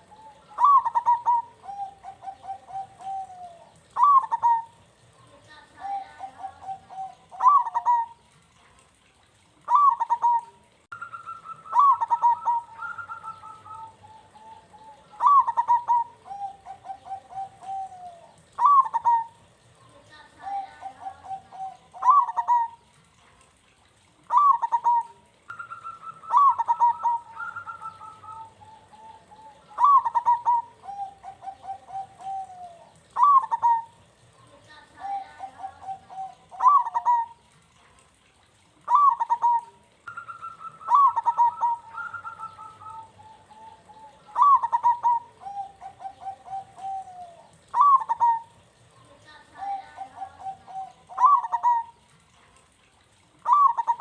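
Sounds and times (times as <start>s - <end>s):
higher-pitched dove cooing: 0.0s - 23.0s, 24.1s - 54.0s
doves cooing: 0.0s - 23.2s, 23.8s - 54.0s.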